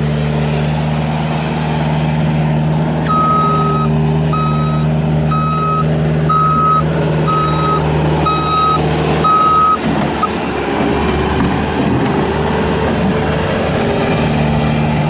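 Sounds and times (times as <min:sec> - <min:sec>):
diesel engine running: 0:00.0 - 0:15.0
backup alarm beeping: 0:03.1 - 0:10.3.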